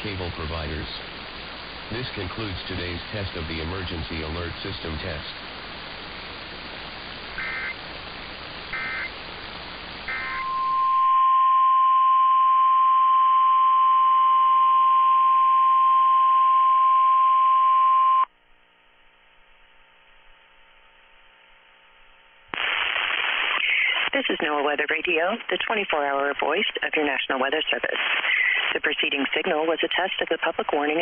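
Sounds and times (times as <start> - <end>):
radio hiss: 0.0 - 11.2, 22.5 - 31.0
faint hum: 0.0 - 31.0
electronic data bursts: 7.4 - 7.8, 8.7 - 9.2, 10.1 - 11.1
steady alarm tone: 7.4 - 7.8, 8.7 - 9.1, 10.1 - 18.2.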